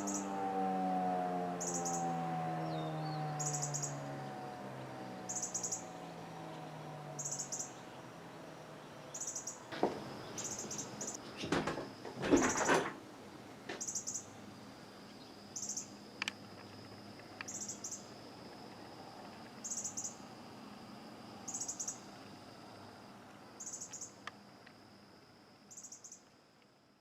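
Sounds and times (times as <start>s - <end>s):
high-pitched whine: 0.0s - 26.2s
high pulsed chirps: 1.6s - 2.0s, 2.6s - 4.0s, 5.2s - 5.9s, 7.2s - 9.6s, 10.2s - 11.2s.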